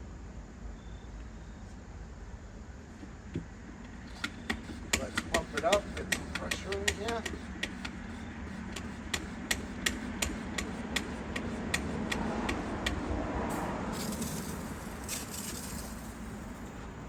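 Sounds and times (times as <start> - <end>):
sprayer hand pump clicking: 3.9 - 16.8
short hissing bursts: 4.1 - 17.0.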